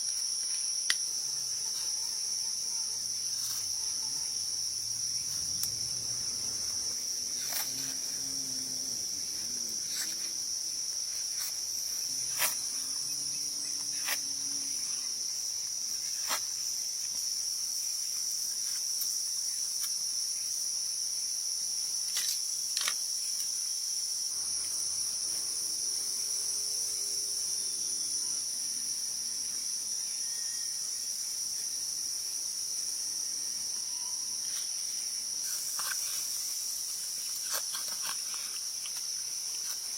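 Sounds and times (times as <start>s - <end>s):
insects chirring: 0.0s - 39.9s.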